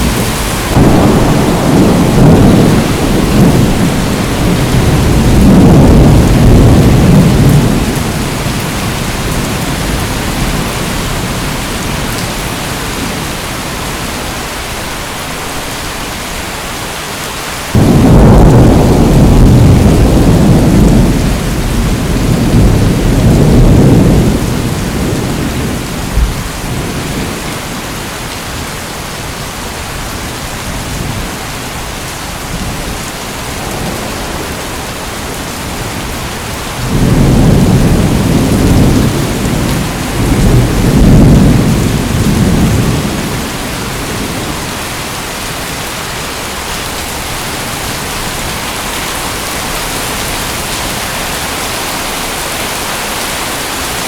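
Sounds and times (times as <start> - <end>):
thunder rumbling: 0.0 - 13.2, 17.7 - 28.1, 32.2 - 45.2
steady rain: 0.0 - 54.0.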